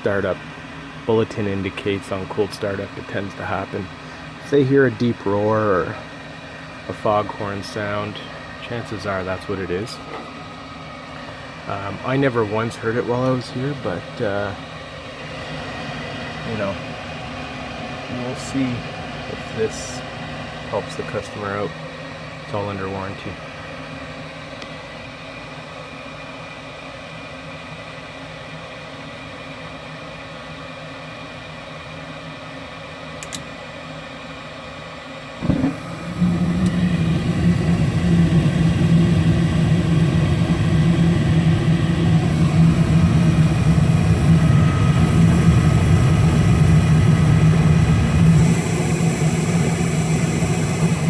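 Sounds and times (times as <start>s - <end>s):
furnace fan hum: 0.0s - 51.0s
burners rumbling: 35.4s - 51.0s.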